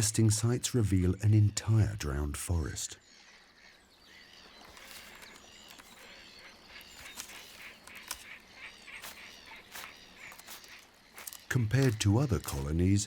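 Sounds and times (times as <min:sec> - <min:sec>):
gulls calling harshly: 0:04.5 - 0:13.0.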